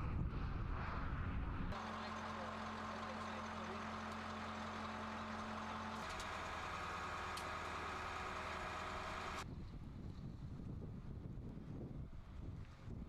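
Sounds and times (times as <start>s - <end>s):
wind rumble on microphone: 0.0s - 1.8s, 9.4s - 13.0s
vehicle engine humming: 1.6s - 9.5s.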